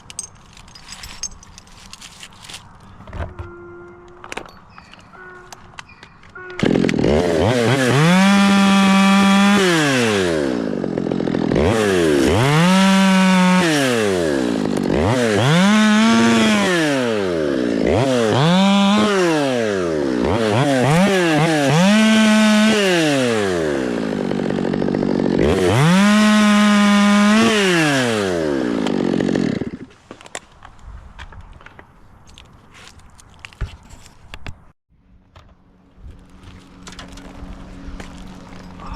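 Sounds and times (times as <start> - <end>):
chainsaw revving: 6.6 - 29.9.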